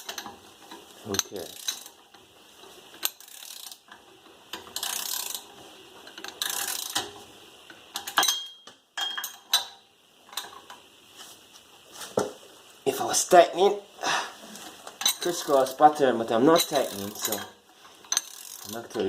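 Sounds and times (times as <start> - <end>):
ratchet wrench clicking: 1.1 - 2.3, 2.9 - 8.4, 16.6 - 19.0.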